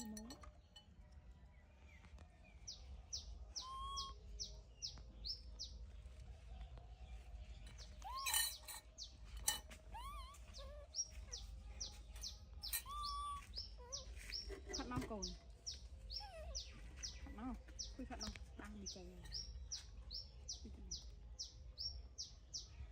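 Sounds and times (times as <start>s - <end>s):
bird singing: 2.1s - 5.9s, 7.1s - 22.9s.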